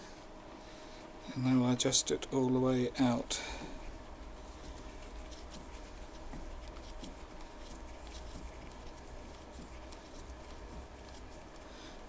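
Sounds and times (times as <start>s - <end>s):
low steady hum: 0.0s - 12.0s
tool clicking and scratching: 3.8s - 11.7s.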